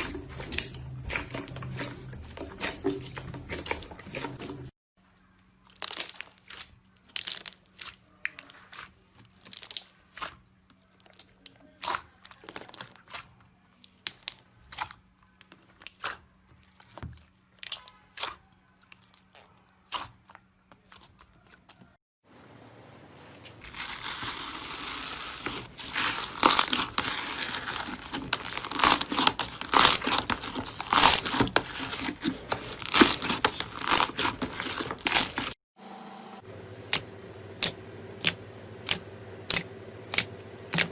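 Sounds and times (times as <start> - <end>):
slime crackling and popping: 5.6 - 10.4, 23.7 - 35.6.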